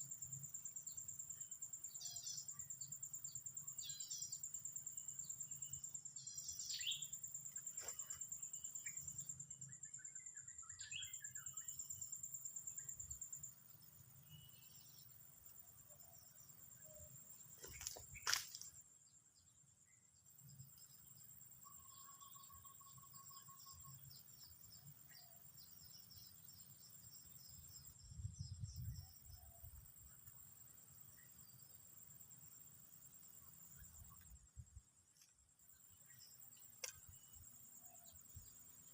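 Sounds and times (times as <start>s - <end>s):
insect chorus chirping: 0.0s - 38.9s
small birds chirping: 0.4s - 19.6s.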